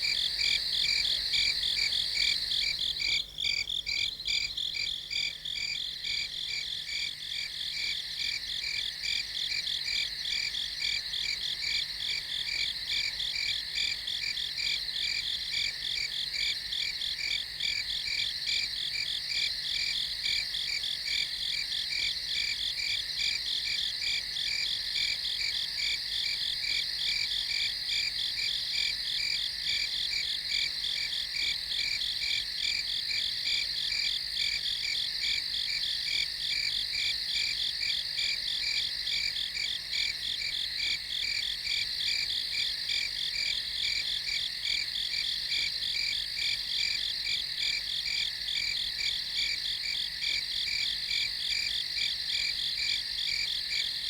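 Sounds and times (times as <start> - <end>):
crickets chirping: 0.0 - 6.7.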